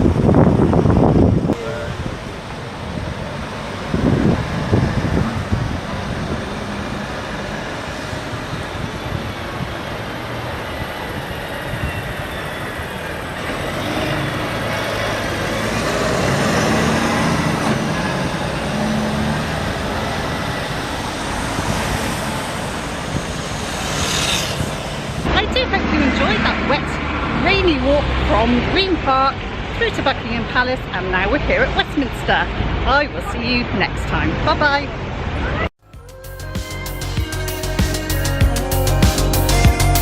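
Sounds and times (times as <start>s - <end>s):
wind buffeting microphone: 0.0s - 30.2s
road traffic passing: 0.0s - 40.0s.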